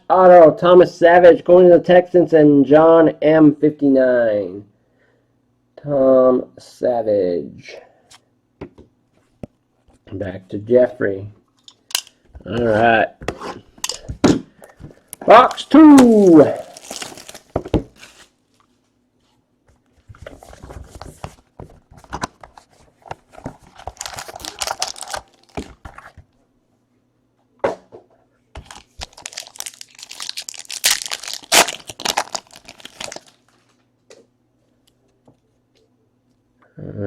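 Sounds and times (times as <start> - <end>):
plastic wrapping crackling: 15.3 - 18.7, 23.7 - 25.9, 28.6 - 33.8.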